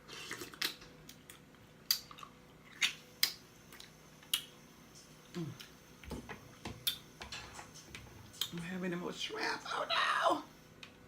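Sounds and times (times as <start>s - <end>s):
low voice hum: 5.2s - 5.7s.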